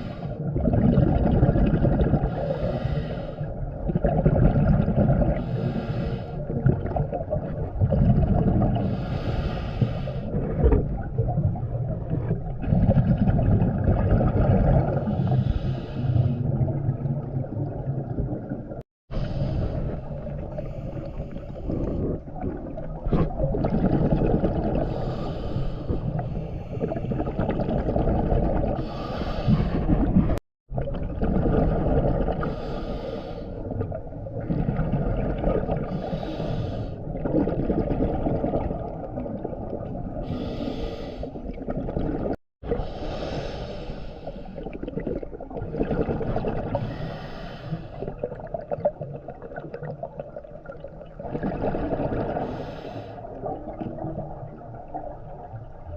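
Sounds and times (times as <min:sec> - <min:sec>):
exhaled bubbles rumbling: 0:00.0 - 0:55.9
regulator hissing inhale: 0:02.3 - 0:03.5, 0:05.4 - 0:06.4, 0:08.8 - 0:10.3, 0:15.1 - 0:16.4, 0:24.8 - 0:27.2, 0:28.8 - 0:29.8, 0:32.5 - 0:33.6, 0:35.9 - 0:37.0, 0:40.3 - 0:41.4, 0:42.8 - 0:44.6, 0:46.8 - 0:48.2, 0:52.4 - 0:53.4.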